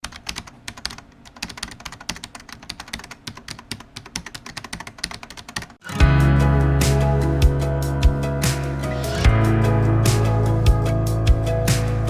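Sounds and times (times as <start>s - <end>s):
typing on keys: 0.0s - 5.8s
music with heavy bass beat: 6.0s - 12.0s.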